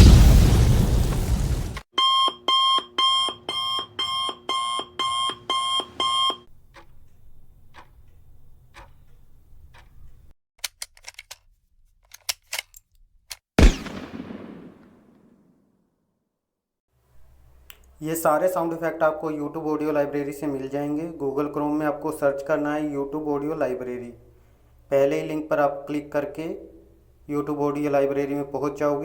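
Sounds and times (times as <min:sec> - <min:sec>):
loud hit with long tail: 0:00.0 - 0:01.8
alarm clock beeping: 0:02.0 - 0:06.9
faint regular ticking: 0:06.5 - 0:10.3.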